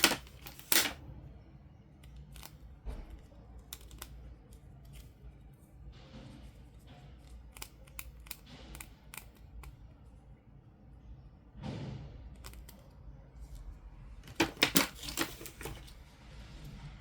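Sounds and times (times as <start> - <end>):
packaging rustle: 0.0 - 1.0, 14.3 - 16.0
plastic toy parts clicking: 0.0 - 1.0, 2.0 - 2.6, 3.6 - 5.1, 7.2 - 9.8, 12.4 - 12.8.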